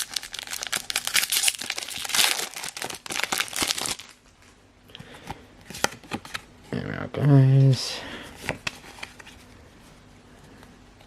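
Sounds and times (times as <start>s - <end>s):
foil wrapper crinkling and tearing: 0.0s - 4.2s.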